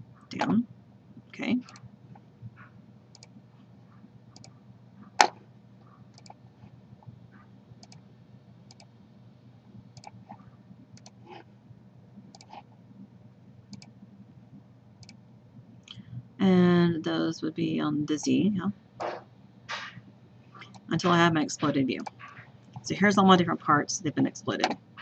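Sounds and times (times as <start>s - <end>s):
computer mouse clicking: 1.6s - 1.8s, 3.1s - 3.4s, 6.1s - 6.4s, 7.8s - 8.0s, 8.7s - 8.9s, 10.0s - 10.2s, 11.0s - 11.2s, 12.3s - 12.6s, 13.7s - 13.9s.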